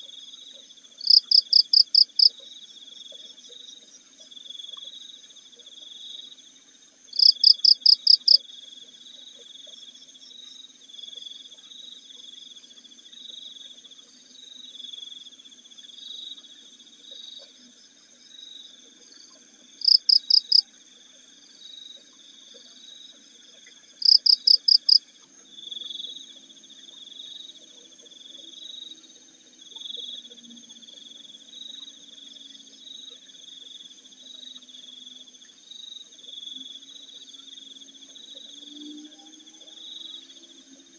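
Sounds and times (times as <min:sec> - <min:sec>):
crickets chirping: 0:00.0 - 0:40.9
loud rapid insect chirps: 0:01.0 - 0:02.4, 0:07.1 - 0:08.4, 0:19.3 - 0:20.7, 0:23.6 - 0:25.0.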